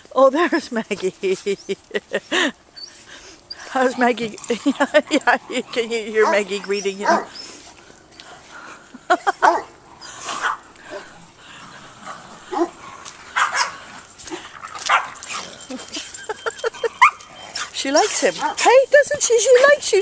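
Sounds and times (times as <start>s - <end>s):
dog whining and yipping: 2.2s - 7.6s, 13.4s - 18.7s.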